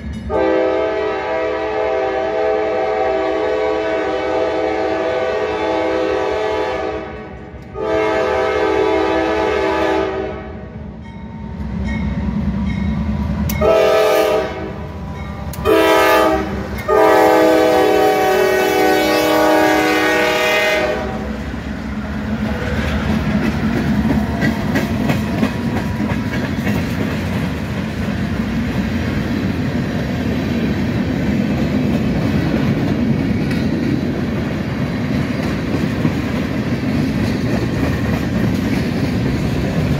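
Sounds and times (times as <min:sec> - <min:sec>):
locomotive horn blasts: 0:00.3 - 0:10.8, 0:13.5 - 0:21.4
train wheels clacking on rails: 0:11.0 - 0:19.6, 0:21.3 - 0:39.9.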